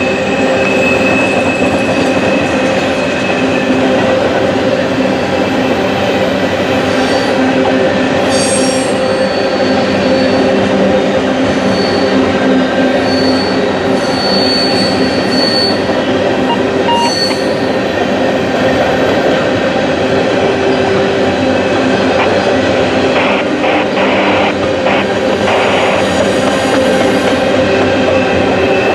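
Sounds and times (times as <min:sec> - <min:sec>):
freight train wheels rumbling on rail: 0:00.0 - 0:28.9
high-pitched wheel squeals: 0:11.6 - 0:12.2, 0:12.9 - 0:17.8.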